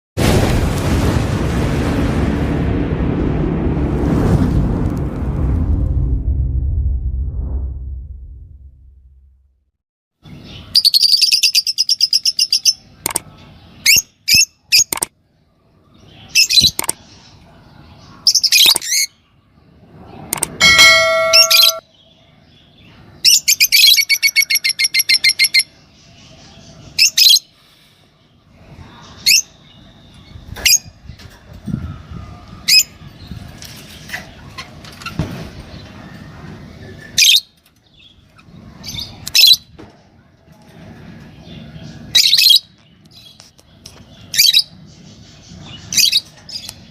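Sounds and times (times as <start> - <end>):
brief steady ringing tone: 20.6 - 21.8.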